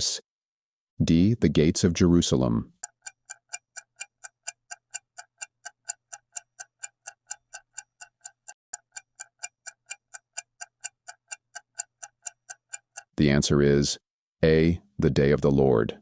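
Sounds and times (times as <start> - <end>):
clock ticking: 2.6 - 13.8.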